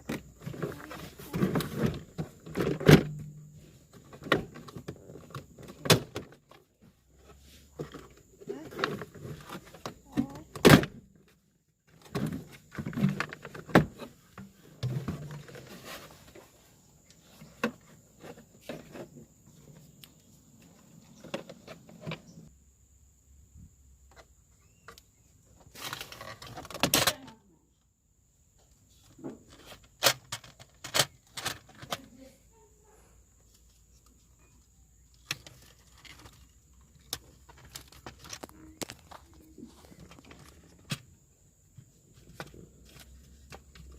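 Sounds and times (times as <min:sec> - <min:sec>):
scraping rustle: 0:12.3 - 0:19.8.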